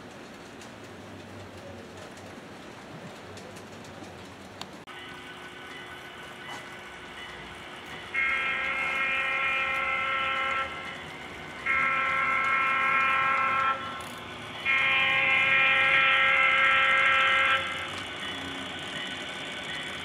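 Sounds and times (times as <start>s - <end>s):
steady running noise: 0.0s - 20.0s
thin model locomotive horn: 8.1s - 11.0s, 11.6s - 18.8s.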